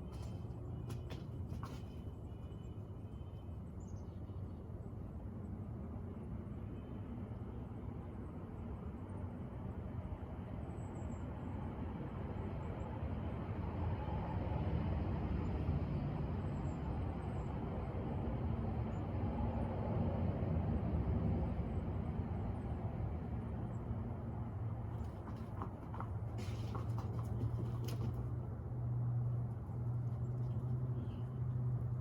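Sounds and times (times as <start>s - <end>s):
low engine rumble: 21.6s - 32.0s.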